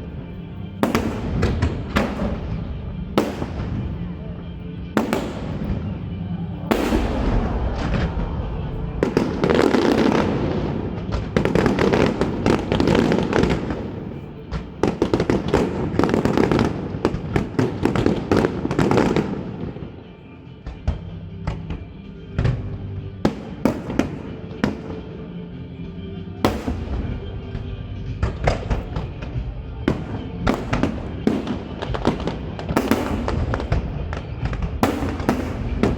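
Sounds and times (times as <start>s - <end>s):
fireworks bangs and crackles: 0.0s - 25.4s, 26.4s - 35.9s.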